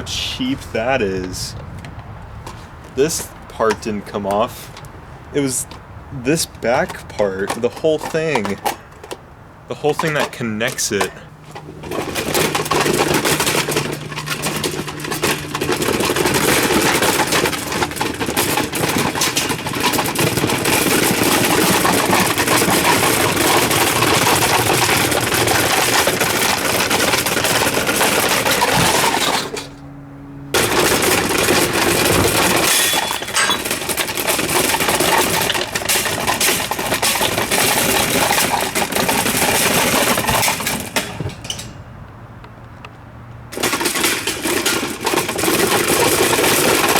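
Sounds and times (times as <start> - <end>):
fan motor hum: 0.0 - 42.8
plastic and metal parts rattling: 2.4 - 29.8, 30.6 - 41.8, 43.5 - 46.9.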